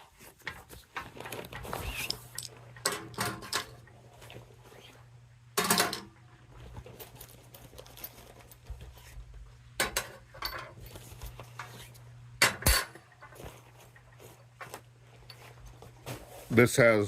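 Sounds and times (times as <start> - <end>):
metal table parts clinking: 1.9 - 3.8, 5.6 - 6.1, 9.8 - 10.9.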